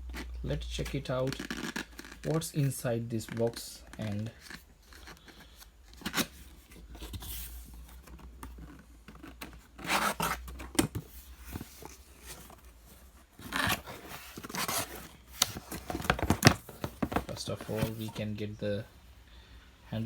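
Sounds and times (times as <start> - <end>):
cardboard tearing and rustling: 3.2 - 18.3.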